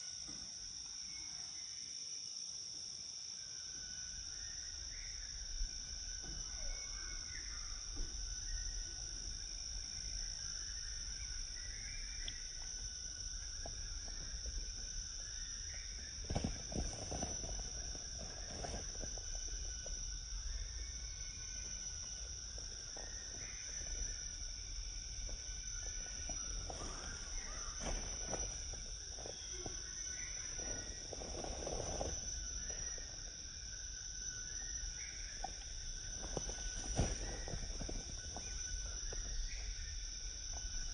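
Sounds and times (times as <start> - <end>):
insect chorus trilling: 0.0 - 40.9
faint rustles and knocks: 12.6 - 20.2, 21.5 - 33.2, 35.4 - 39.7.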